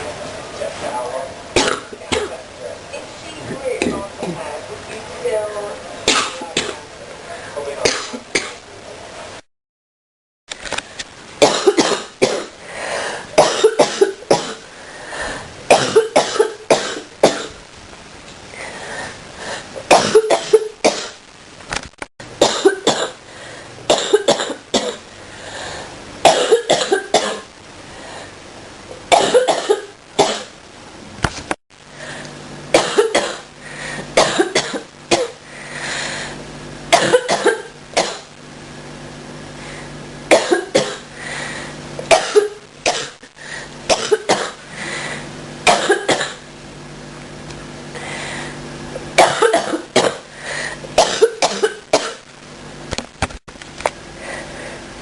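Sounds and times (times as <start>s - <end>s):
person coughing: 11.4s - 12.5s, 13.4s - 14.6s, 15.7s - 17.6s, 19.9s - 21.2s, 26.3s - 27.4s, 36.9s - 38.3s, 40.3s - 41.0s, 42.1s - 43.2s, 43.9s - 44.6s, 45.7s - 46.4s, 49.2s - 50.3s, 51.0s - 52.2s.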